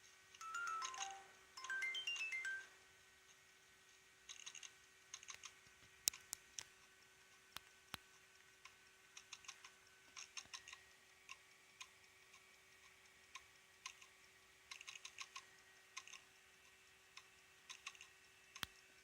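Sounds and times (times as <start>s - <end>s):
hard disk drive clicking: 4.3s - 19.0s.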